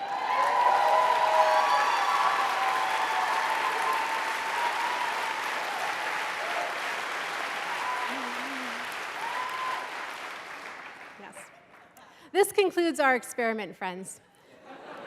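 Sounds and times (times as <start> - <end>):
whoops: 0.0 - 6.8, 7.6 - 10.1
audience applauding and cheering: 0.0 - 12.0.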